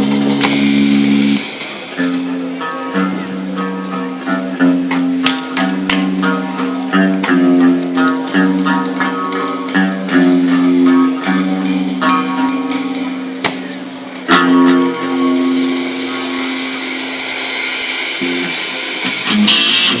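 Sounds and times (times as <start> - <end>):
rock guitar riff: 0.0 - 20.0.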